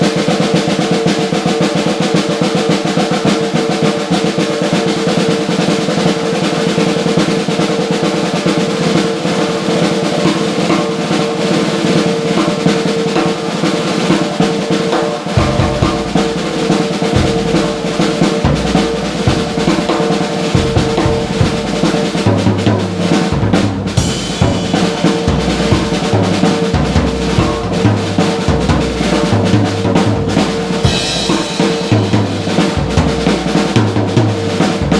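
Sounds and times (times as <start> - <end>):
snare drum roll: 0.0 - 34.9
bass drum: 15.3 - 34.9.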